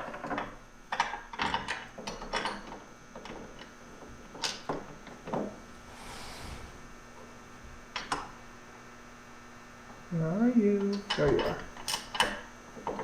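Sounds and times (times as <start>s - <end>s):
short rustling hiss: 5.6s - 7.2s.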